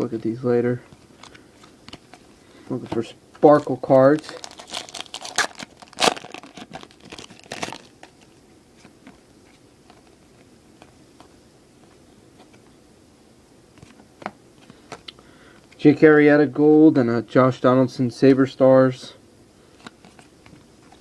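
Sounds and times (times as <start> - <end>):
foil wrappers crinkling: 3.4 - 8.2.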